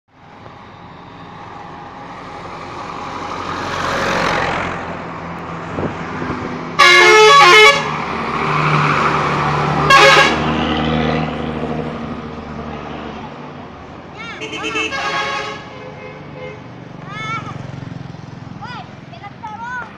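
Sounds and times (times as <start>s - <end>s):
bus passing by: 0.1s - 19.9s
multi-tone musical bus horn: 6.8s - 8.0s, 9.8s - 10.6s, 14.4s - 16.6s.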